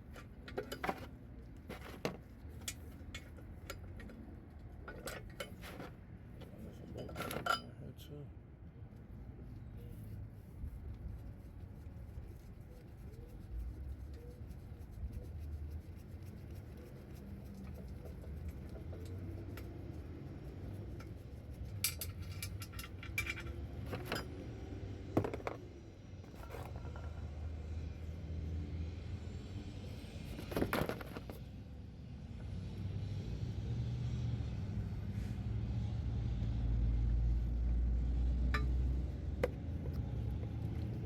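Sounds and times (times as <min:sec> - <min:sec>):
metal parts clinking and knocking: 0:21.8 - 0:24.4.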